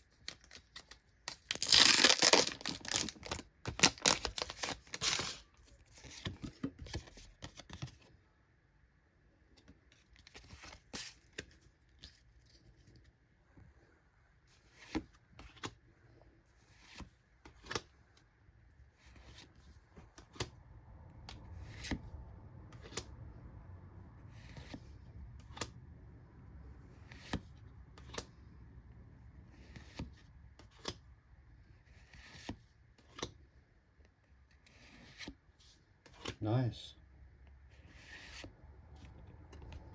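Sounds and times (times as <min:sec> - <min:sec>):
trading cards being flipped: 0:00.3 - 0:07.9.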